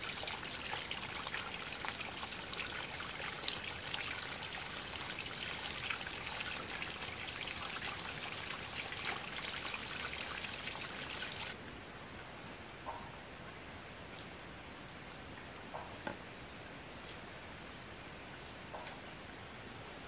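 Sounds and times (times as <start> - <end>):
water dripping: 0.0 - 11.6
water trickling and splashing: 0.0 - 11.6.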